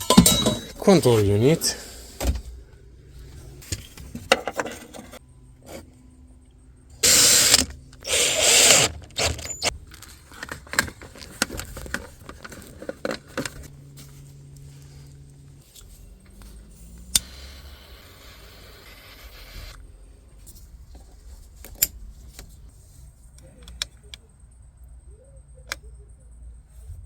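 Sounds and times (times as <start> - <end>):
loud rasping bursts: 7.0 - 9.7
clicks and rattles of wiring: 8.6 - 13.8.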